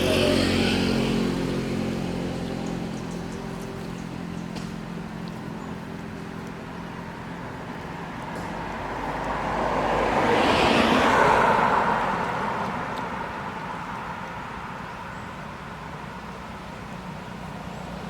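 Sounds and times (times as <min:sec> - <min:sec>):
vehicle passing by: 0:00.0 - 0:18.0.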